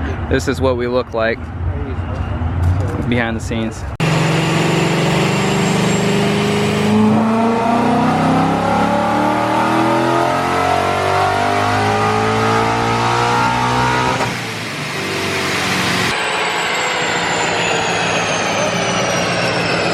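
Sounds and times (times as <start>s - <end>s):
car engine revving: 4.0s - 19.9s.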